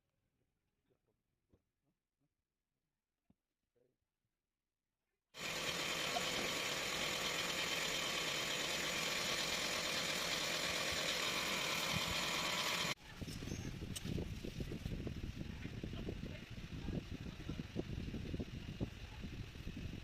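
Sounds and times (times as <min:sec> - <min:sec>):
pump motor buzzing whine: 0:05.4 - 0:13.0.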